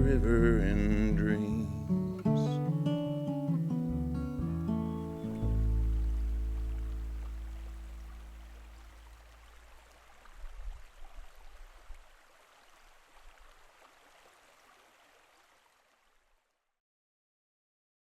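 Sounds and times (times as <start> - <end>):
low bass note: 0.0 - 2.5, 3.9 - 9.1
low rumbles: 0.0 - 3.0, 3.9 - 9.8
faint outdoor hiss: 0.0 - 16.6.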